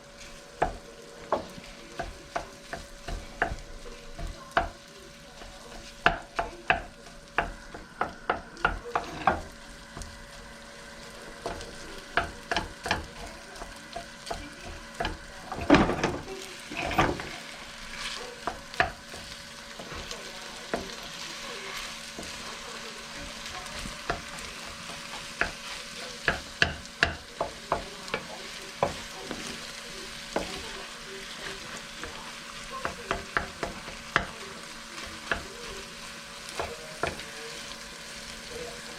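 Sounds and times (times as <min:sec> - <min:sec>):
fried rice sizzling in a pan: 0:00.0 - 0:38.9
spatula scraping a pan: 0:00.0 - 0:38.9
utensil tapping against pan: 0:00.6 - 0:10.2, 0:11.4 - 0:16.2, 0:18.4 - 0:22.4, 0:23.2 - 0:31.0, 0:31.7 - 0:35.8, 0:36.5 - 0:37.4.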